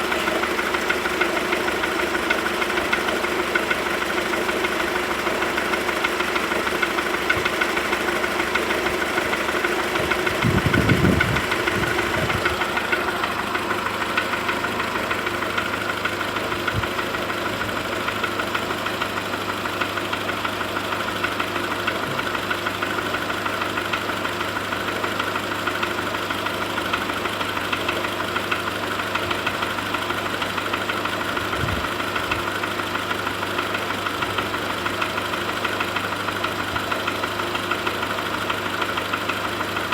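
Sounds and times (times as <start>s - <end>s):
car engine idling: 0.0s - 39.9s
fast even engine ticking: 0.0s - 39.9s.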